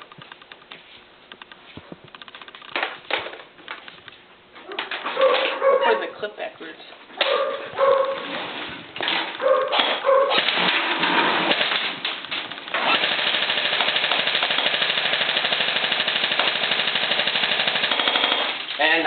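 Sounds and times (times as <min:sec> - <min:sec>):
handling noise: 0:00.0 - 0:06.2, 0:07.0 - 0:13.0
airsoft gun full-auto burst: 0:09.8 - 0:11.9, 0:12.7 - 0:19.0.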